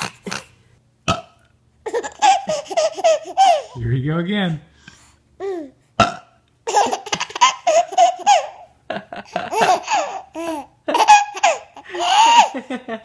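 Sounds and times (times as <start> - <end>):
baby laughing: 0.0 - 0.5, 1.8 - 3.8, 6.6 - 12.7.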